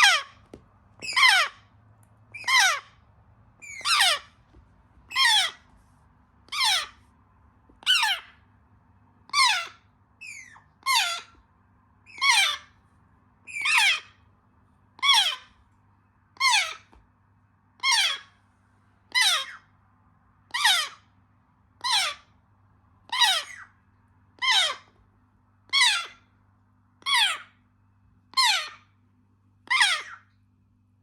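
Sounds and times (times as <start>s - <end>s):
parrot chick begging squawks: 0.0s - 0.4s, 1.0s - 1.7s, 2.3s - 3.0s, 3.6s - 4.5s, 5.1s - 5.7s, 6.4s - 7.0s, 7.8s - 8.4s, 9.2s - 11.4s, 12.1s - 12.8s, 13.5s - 14.2s, 15.0s - 15.6s, 16.3s - 16.9s, 17.8s - 18.4s, 19.1s - 19.7s, 20.4s - 21.1s, 21.8s - 22.3s, 23.1s - 25.0s, 25.6s - 26.3s, 27.0s - 27.6s, 28.3s - 29.0s, 29.6s - 30.4s.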